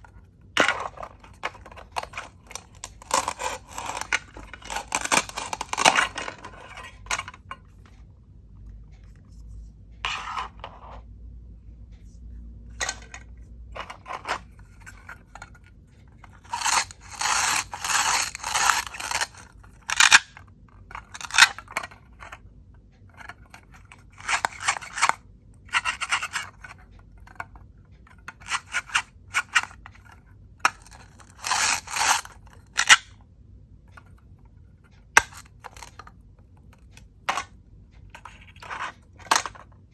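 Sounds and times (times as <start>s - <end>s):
toy knife scraping plastic toys: 0.0s - 7.7s, 10.0s - 11.0s, 12.8s - 22.4s, 23.1s - 27.5s, 28.1s - 33.1s, 35.1s - 36.1s, 38.1s - 39.7s.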